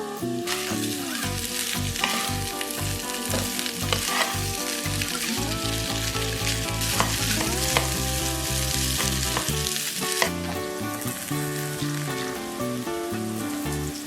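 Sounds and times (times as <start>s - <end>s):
background music: 0.0s - 14.0s
food sizzling in hot oil: 0.0s - 14.0s
stirring in a pan: 0.5s - 10.7s.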